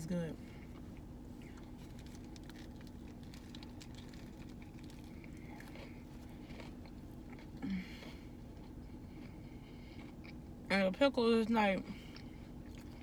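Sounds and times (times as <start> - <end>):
steady low hum: 0.0 - 13.0
person chewing crispy food: 0.5 - 10.7, 11.8 - 13.0.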